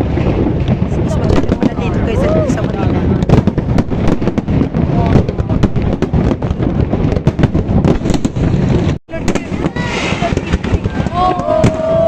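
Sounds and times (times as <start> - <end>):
fireworks bangs and crackles: 0.0 - 12.0
people's voices: 0.8 - 3.4, 9.1 - 12.0.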